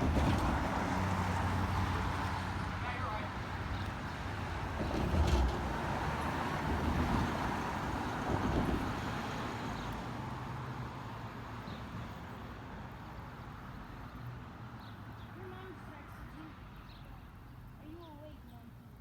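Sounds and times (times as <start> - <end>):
passenger train passing: 0.0 - 10.7.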